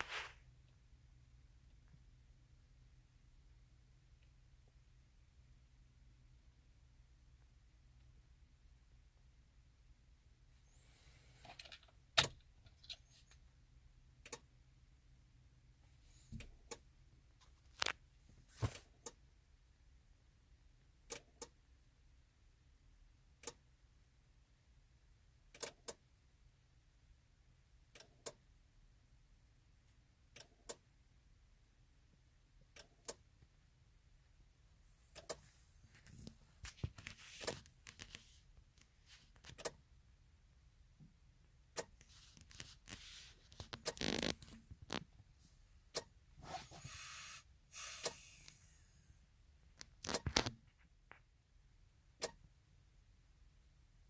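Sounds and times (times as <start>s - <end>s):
scraping and rustling: 0.0s - 0.4s, 35.4s - 38.4s.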